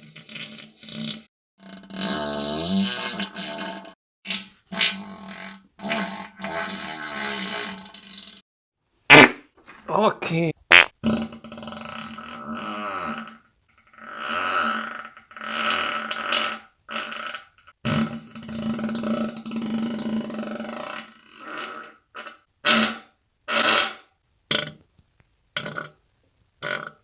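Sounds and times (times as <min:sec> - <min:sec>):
person farting: 0:09.1 - 0:10.9.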